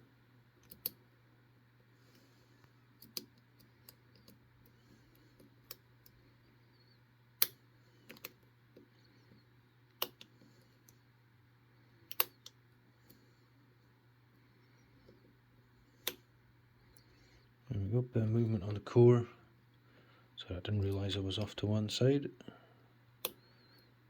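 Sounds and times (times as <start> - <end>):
lock pick metal clicks: 12.1 - 12.6.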